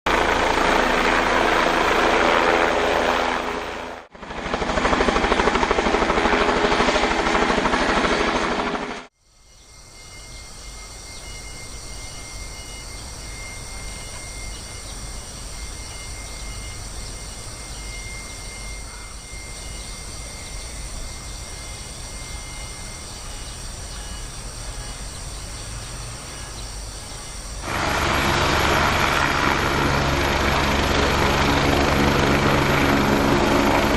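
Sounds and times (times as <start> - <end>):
helicopter rotor and engine: 0.1 - 9.1, 9.9 - 33.9
thin steady whine: 9.1 - 33.9.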